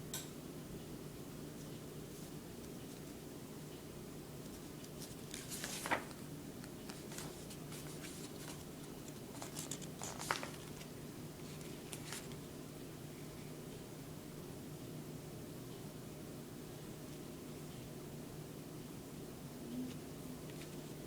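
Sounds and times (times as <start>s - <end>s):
steady low hum: 0.0s - 21.0s
soft packaging rustling: 4.5s - 12.4s, 19.9s - 21.0s.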